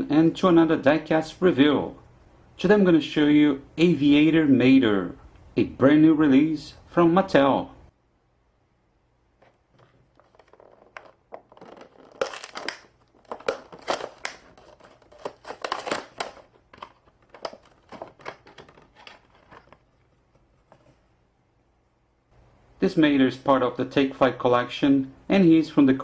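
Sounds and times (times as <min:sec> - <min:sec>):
plastic packaging crinkling: 0:09.8 - 0:20.9.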